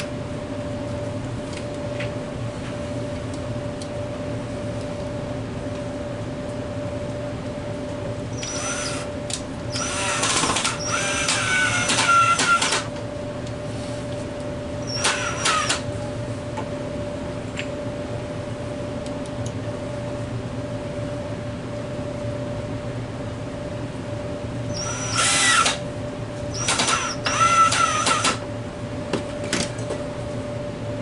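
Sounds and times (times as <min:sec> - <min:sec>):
steady hum: 0:00.0 - 0:31.0
power drill whining: 0:08.4 - 0:09.1, 0:09.7 - 0:12.9, 0:14.8 - 0:15.8, 0:24.7 - 0:25.8, 0:26.6 - 0:28.4.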